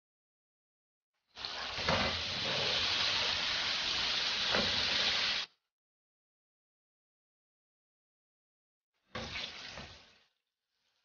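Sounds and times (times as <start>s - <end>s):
chicken deep-frying in oil: 1.3s - 5.6s, 9.0s - 11.0s.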